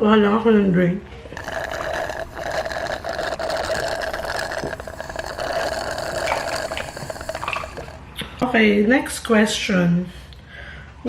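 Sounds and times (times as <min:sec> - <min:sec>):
soda pouring over ice: 0:01.4 - 0:08.0
fizzing crackle: 0:01.4 - 0:08.4.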